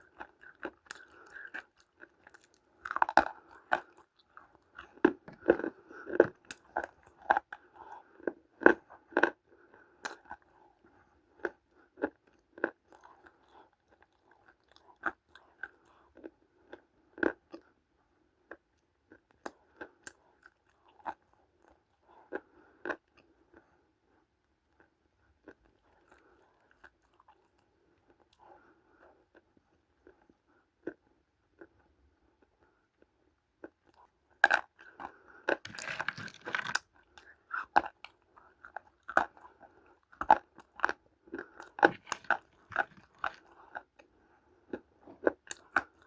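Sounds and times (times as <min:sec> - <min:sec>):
crunching clay lumps: 0:35.6 - 0:36.8, 0:41.6 - 0:43.5.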